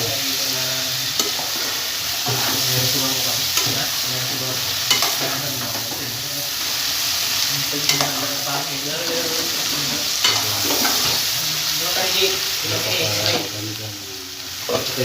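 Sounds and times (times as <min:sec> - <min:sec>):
food sizzling in a frying pan: 0:00.0 - 0:15.0
utensil scraping a pan: 0:07.8 - 0:11.4.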